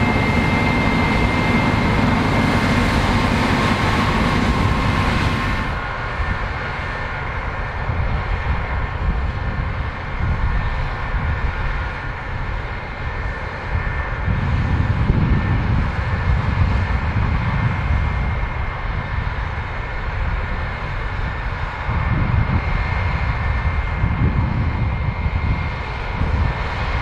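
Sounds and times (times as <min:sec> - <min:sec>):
combine harvester running: 0:00.0 - 0:07.2.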